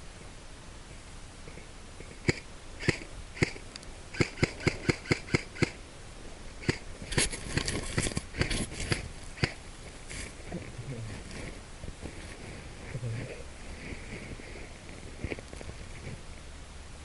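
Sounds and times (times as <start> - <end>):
airsoft gun shots: 2.2 - 5.8, 6.6 - 7.3.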